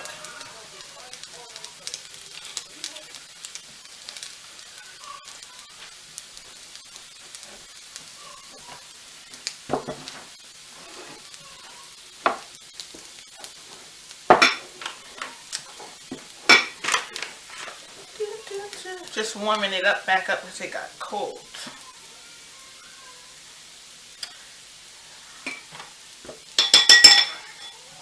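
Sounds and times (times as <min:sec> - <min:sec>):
chicken sizzling in a frying pan: 0:00.0 - 0:28.0.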